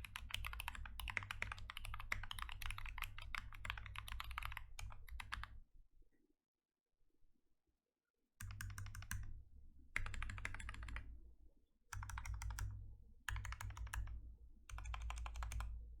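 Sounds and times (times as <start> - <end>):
mechanical keyboard typing: 0.0 - 5.5, 8.4 - 9.2, 10.0 - 11.0, 12.0 - 12.7, 13.3 - 14.1, 14.7 - 15.7.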